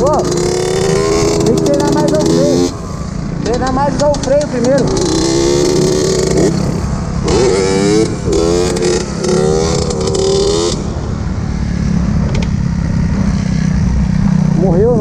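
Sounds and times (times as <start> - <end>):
small motorcycle engine revving: 0.0 - 15.0.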